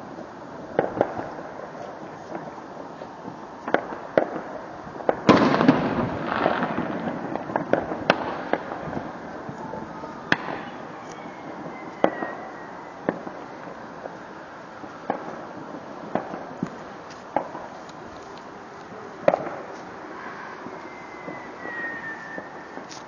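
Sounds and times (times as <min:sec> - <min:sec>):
fireworks banging: 0:00.0 - 0:23.0
faint high firework whistle: 0:08.1 - 0:14.3, 0:18.9 - 0:23.0.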